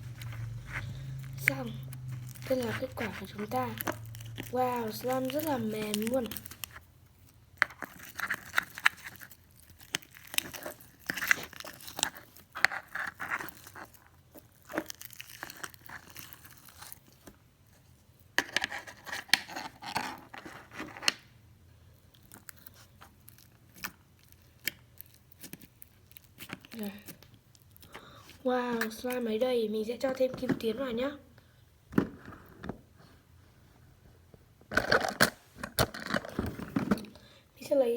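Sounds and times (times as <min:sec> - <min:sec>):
slime sticky clicks and crackles: 0:22.1 - 0:27.9.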